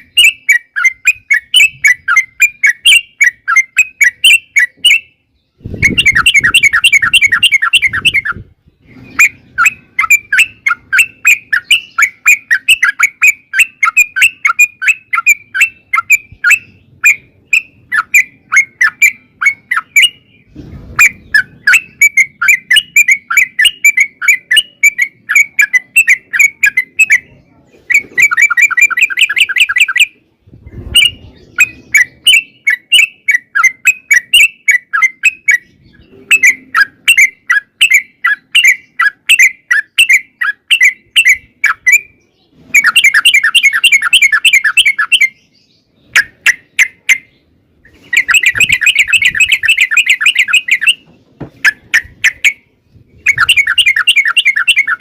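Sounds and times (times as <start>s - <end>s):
bird chirping song: 0.0s - 55.0s.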